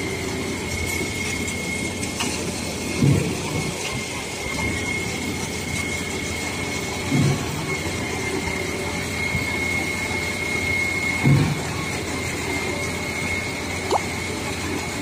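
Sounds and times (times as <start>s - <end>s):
concrete pump running with whine: 0.0s - 15.0s
dull low thump: 11.2s - 11.7s.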